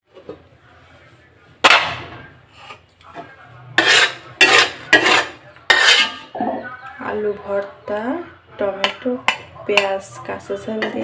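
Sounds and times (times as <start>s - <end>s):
kitchenware scraping clatters: 1.6s - 6.6s.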